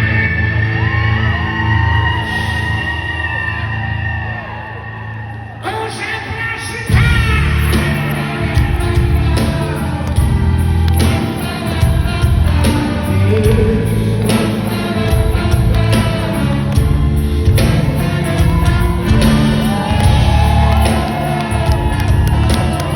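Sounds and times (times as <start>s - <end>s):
raspy male singer: 5.6s - 10.0s, 13.1s - 15.4s
live rock band playing: 6.6s - 22.9s.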